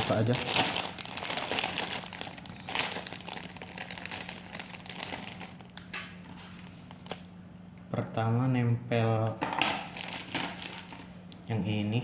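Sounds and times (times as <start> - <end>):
plastic packaging crinkling: 0.0 - 7.3, 9.8 - 11.2.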